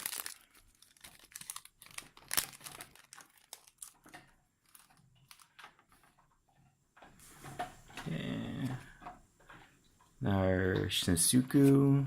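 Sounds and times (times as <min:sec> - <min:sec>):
foil wrapper crinkling: 0:00.0 - 0:05.6.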